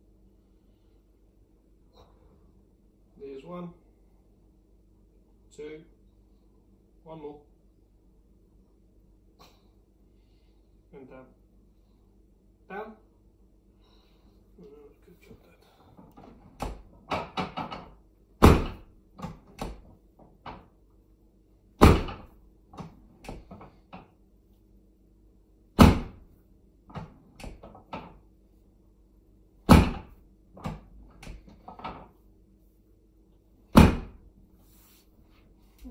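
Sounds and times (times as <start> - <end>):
loud thuds of chiropractic thrusts: 16.0 - 20.7, 21.8 - 24.1, 25.7 - 28.2, 29.6 - 32.1, 33.7 - 34.4.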